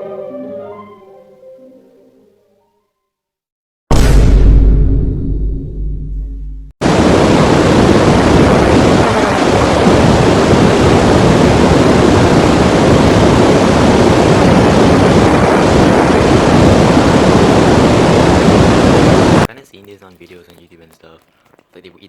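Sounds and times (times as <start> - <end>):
steady rushing roar: 6.8 - 19.5.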